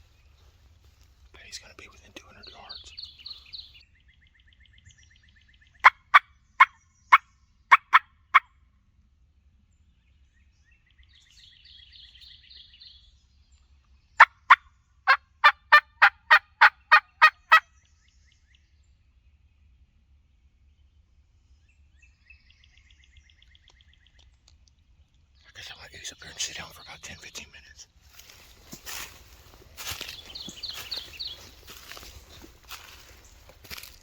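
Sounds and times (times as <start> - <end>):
faint songbird chirps: 0.0 - 8.4, 9.2 - 15.1, 16.6 - 34.0
turkey call yelps: 7.7 - 8.5, 14.2 - 17.6.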